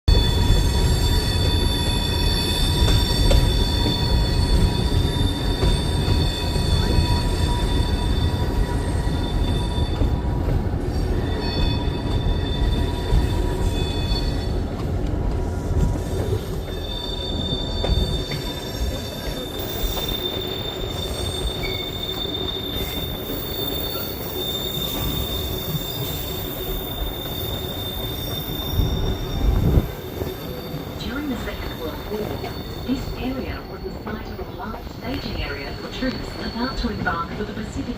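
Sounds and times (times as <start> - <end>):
train rumble on rails: 0.0 - 37.9
high-pitched wheel squeal: 0.1 - 10.1, 16.2 - 30.9.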